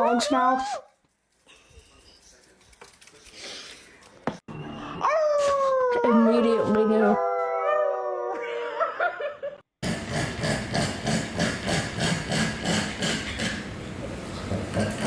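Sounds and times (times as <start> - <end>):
dog howling: 4.7 - 9.0.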